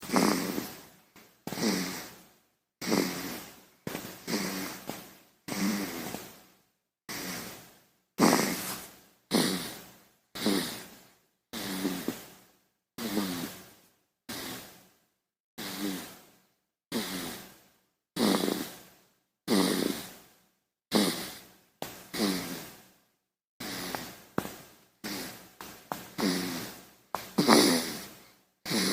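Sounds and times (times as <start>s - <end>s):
baby snoring: 0.0s - 0.9s, 1.5s - 2.2s, 2.8s - 6.4s, 7.1s - 12.4s, 13.0s - 13.7s, 14.3s - 14.8s, 15.6s - 16.2s, 16.9s - 17.6s, 18.2s - 18.9s, 19.5s - 20.2s, 20.9s - 21.5s, 22.1s - 22.8s, 23.6s - 24.2s, 25.0s - 28.9s.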